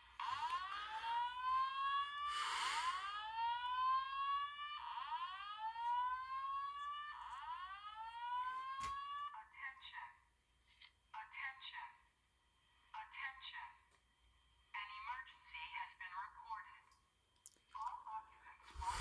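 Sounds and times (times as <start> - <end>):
fire alarm whoop tone: 0.0 - 9.4.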